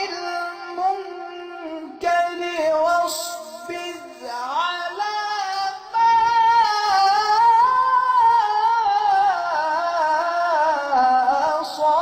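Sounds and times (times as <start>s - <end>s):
man reciting melodically: 0.0s - 12.0s.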